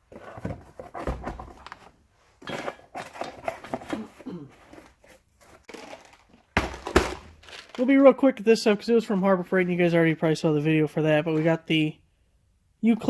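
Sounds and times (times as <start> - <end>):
items rustling and crinkling: 0.0 - 9.8.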